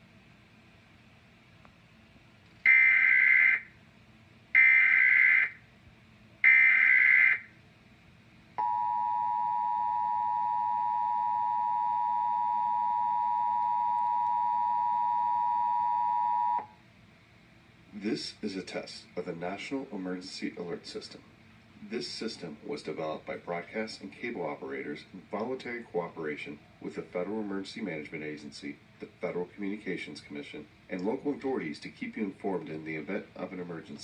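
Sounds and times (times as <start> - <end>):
steady two-tone alert tone: 8.6 - 16.7.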